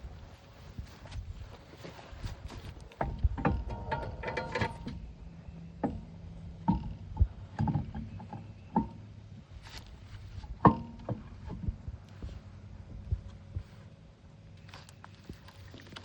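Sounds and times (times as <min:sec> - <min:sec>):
faint steady hum: 0:00.0 - 0:16.0
tools and car parts knocking: 0:03.0 - 0:05.0, 0:05.8 - 0:09.0, 0:10.7 - 0:11.8.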